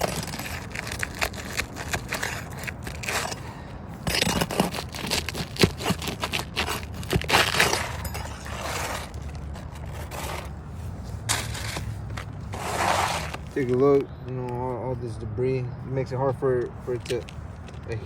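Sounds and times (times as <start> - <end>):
roof shingle scraping and crunching: 0.0 - 14.0.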